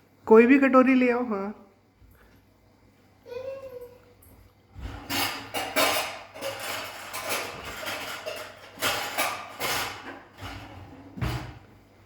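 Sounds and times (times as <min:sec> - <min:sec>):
bowl knocking and clattering: 0:04.8 - 0:10.5.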